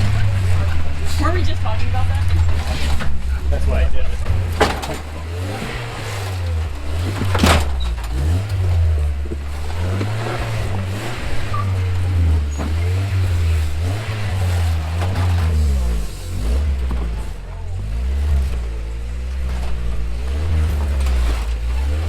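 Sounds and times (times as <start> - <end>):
off-road vehicle engine running: 0.0 - 22.0.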